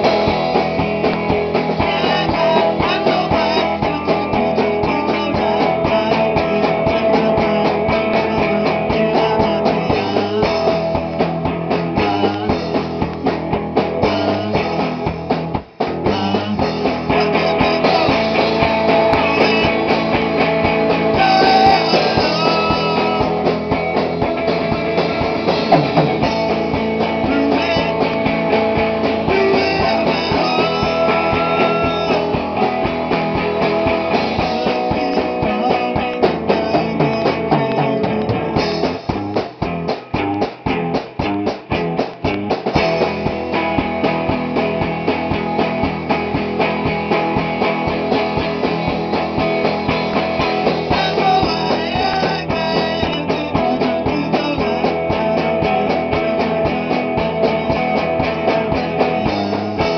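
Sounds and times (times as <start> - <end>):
drum kit: 0.0 - 59.9
electric guitar: 0.0 - 59.9.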